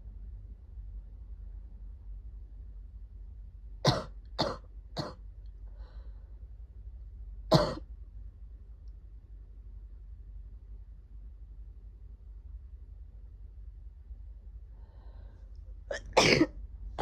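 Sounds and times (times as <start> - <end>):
person coughing: 3.9 - 5.2, 7.5 - 7.8, 15.9 - 16.5.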